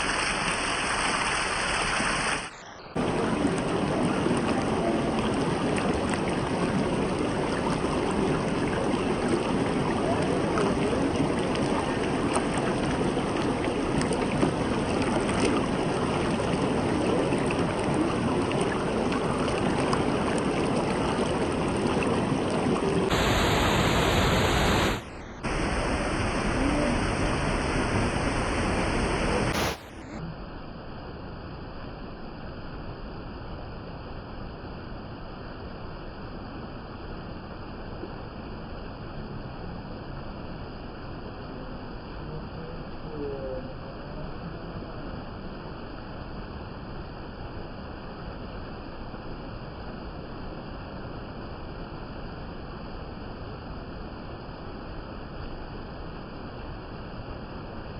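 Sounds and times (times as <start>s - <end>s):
waterfall rushing: 0.0s - 5.6s, 22.2s - 30.2s.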